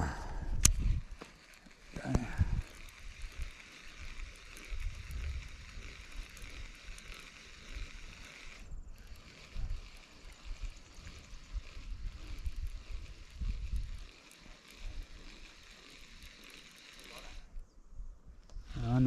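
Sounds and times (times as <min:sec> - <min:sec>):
wind buffeting microphone: 0:00.0 - 0:01.2, 0:02.1 - 0:14.2.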